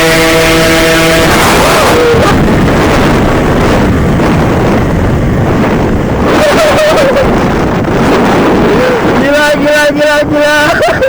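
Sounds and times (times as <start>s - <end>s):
motorcycle engine at speed: 0.0s - 11.0s
wind buffeting microphone: 0.0s - 11.0s.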